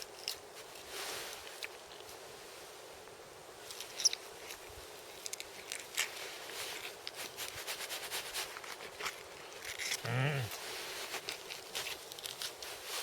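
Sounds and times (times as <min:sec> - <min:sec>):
short low voice: 0:10.0 - 0:10.6.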